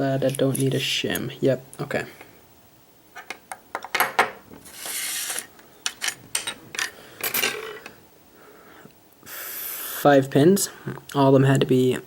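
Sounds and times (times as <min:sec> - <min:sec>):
metal scraping slide: 0:04.6 - 0:05.5.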